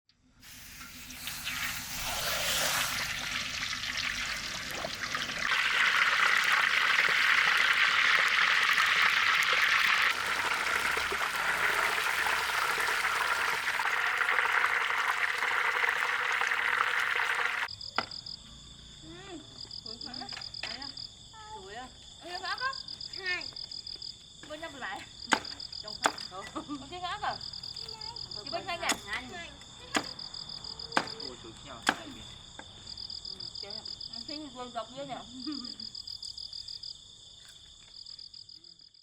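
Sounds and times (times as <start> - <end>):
meat sizzling in hot oil: 0.4 - 17.7.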